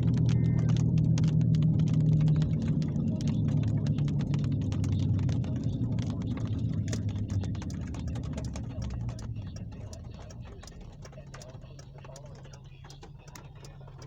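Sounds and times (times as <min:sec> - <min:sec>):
thunder rumbling: 0:00.0 - 0:10.8
sharp ticks: 0:00.0 - 0:14.0.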